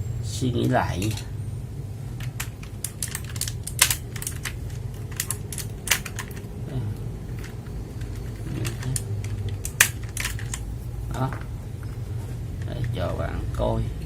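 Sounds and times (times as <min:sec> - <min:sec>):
mechanical keyboard keys clicking: 0:02.2 - 0:06.6, 0:07.3 - 0:10.6.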